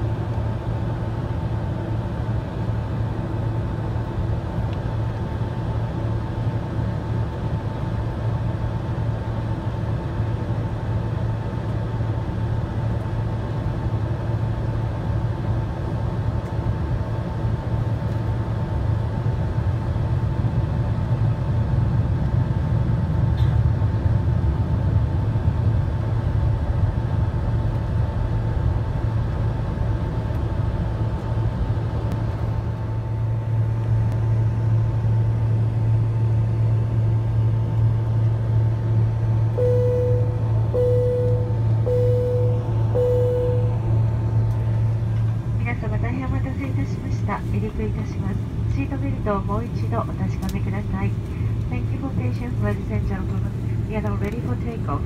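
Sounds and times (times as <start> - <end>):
constant cabin hum: 0.0 - 55.0
engines and wheels rumbling: 15.1 - 55.0.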